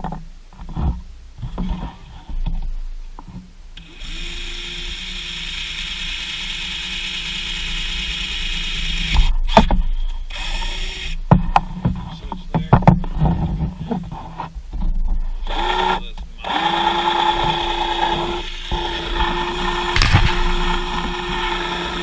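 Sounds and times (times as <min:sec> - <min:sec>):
power drill drilling: 0:03.8 - 0:09.6, 0:10.3 - 0:11.2, 0:15.4 - 0:22.0
sharp knocks: 0:20.0 - 0:21.2.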